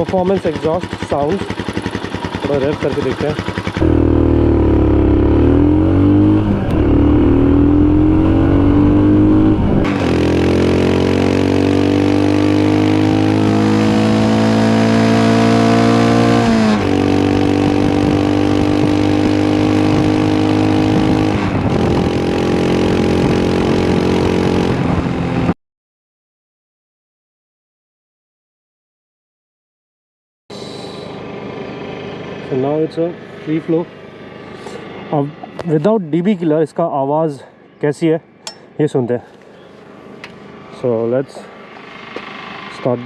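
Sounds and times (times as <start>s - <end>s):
motorcycle engine revving: 0.8s - 25.4s.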